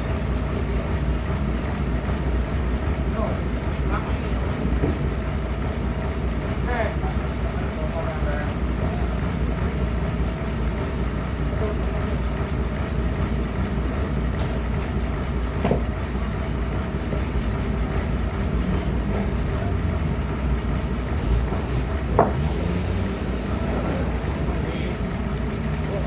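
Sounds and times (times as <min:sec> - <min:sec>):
sawmill machinery drone: 0:00.0 - 0:26.0.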